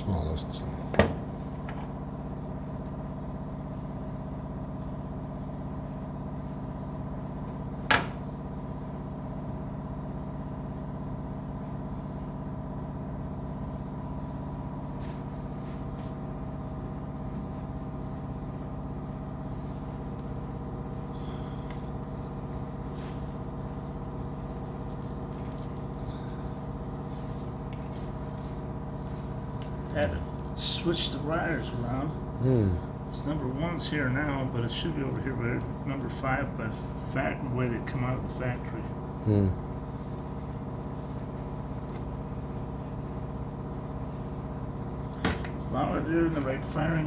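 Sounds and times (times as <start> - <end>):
steady tonal hum: 13.6 - 47.0.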